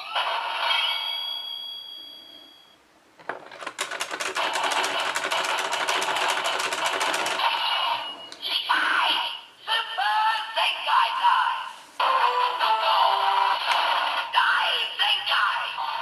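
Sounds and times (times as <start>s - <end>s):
fast sharp clicks: 3.2s - 7.6s.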